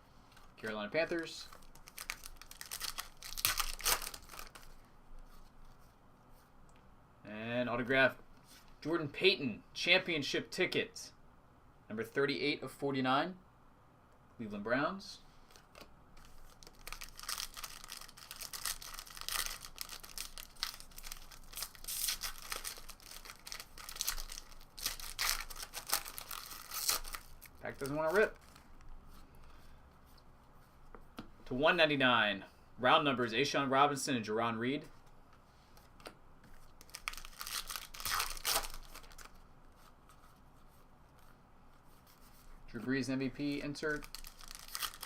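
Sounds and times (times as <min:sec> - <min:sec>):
wrapper crinkling and tearing: 0:01.5 - 0:04.8, 0:15.6 - 0:28.7, 0:36.8 - 0:39.4, 0:43.9 - 0:45.0.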